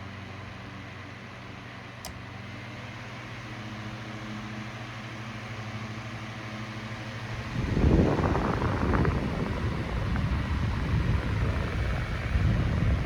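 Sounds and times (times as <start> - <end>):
fan motor hum: 0.0 - 13.0
rush of moving air: 7.3 - 13.0.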